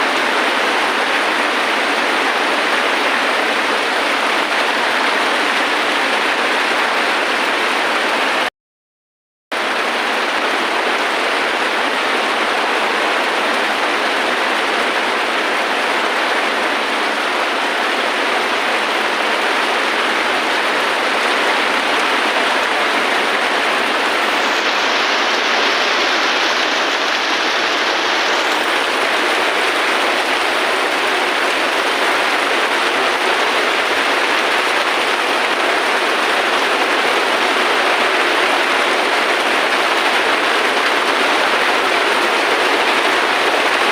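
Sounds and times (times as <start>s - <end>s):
steady rain: 0.0s - 8.5s, 9.6s - 43.9s.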